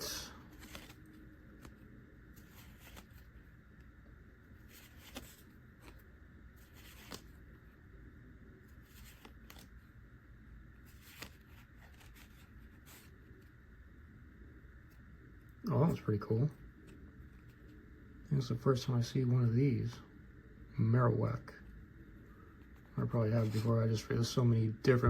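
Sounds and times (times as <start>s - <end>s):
low room hum: 0.0s - 25.0s
cards sliding against each other: 0.4s - 3.4s, 4.6s - 6.0s, 6.6s - 7.5s, 8.7s - 9.9s, 10.8s - 13.5s.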